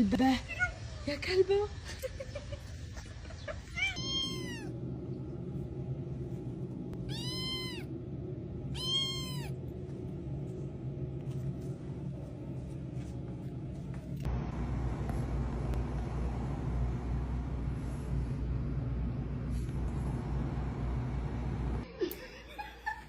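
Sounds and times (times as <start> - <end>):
steady low hum: 0.0 - 23.0
cat meowing: 3.7 - 4.7, 7.0 - 7.9, 8.7 - 9.6.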